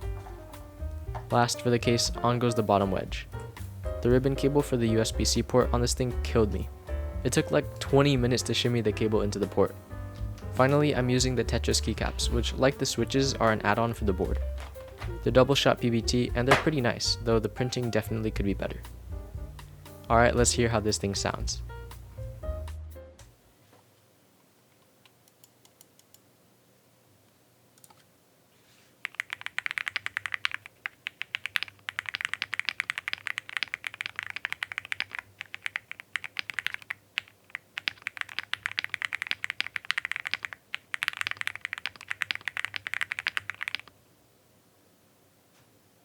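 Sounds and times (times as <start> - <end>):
mechanical keyboard typing: 29.0 - 43.9.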